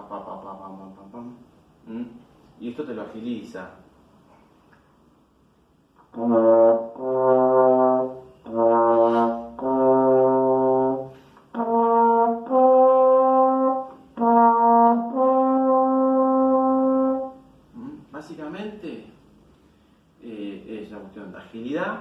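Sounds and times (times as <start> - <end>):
trombone playing held notes: 6.1 - 17.5.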